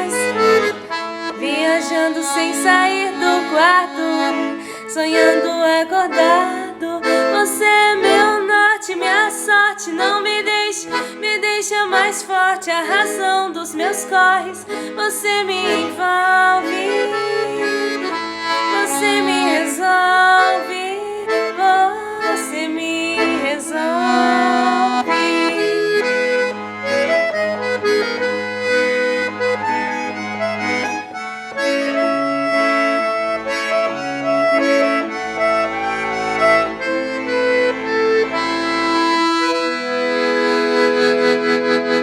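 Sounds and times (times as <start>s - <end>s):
accordion-led instrumental music: 0.0s - 42.0s.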